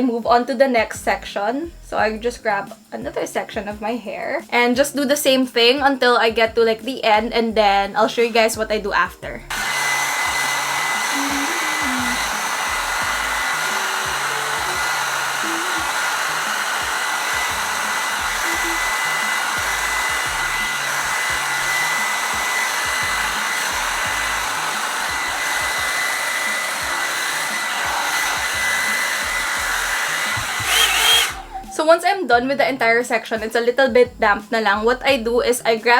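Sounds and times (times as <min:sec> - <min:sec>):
motor whine: 0:09.5 - 0:31.7
hot-air brush blowing: 0:09.5 - 0:31.8.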